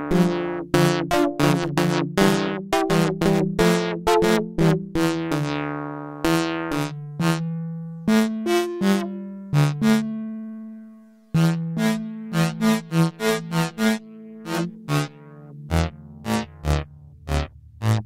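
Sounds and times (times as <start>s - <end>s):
synth melody of short notes: 11.4s - 18.0s.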